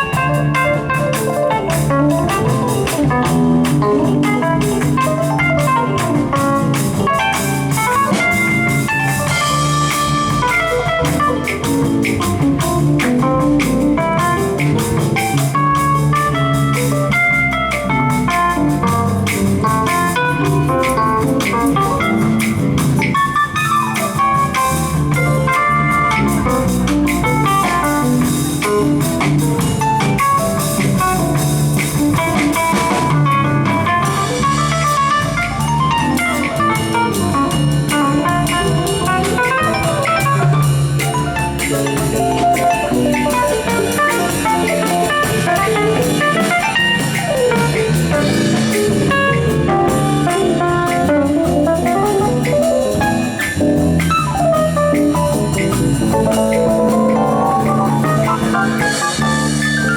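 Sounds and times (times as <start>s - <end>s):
drum kit: 0.0s - 59.9s
guitar with bent notes: 0.0s - 59.9s
jazz blues band playing: 0.0s - 59.9s.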